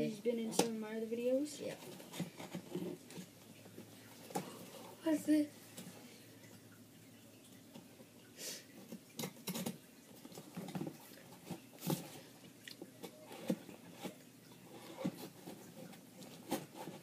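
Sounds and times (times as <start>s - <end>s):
cardboard and tape rustling: 1.4s - 5.1s, 8.9s - 12.3s, 13.0s - 17.0s.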